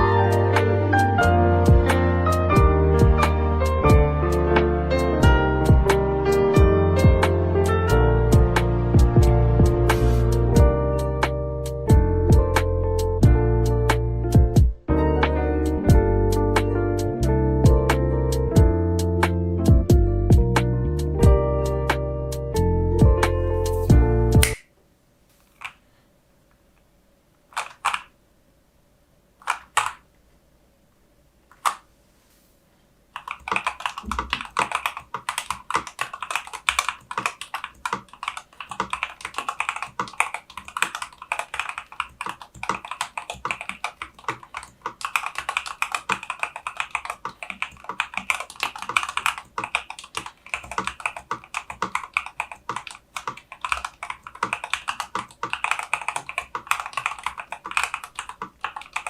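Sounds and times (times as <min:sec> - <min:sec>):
typing on mechanical keyboard: 0:27.5 - 0:28.1, 0:29.4 - 0:30.0, 0:33.2 - 0:59.0.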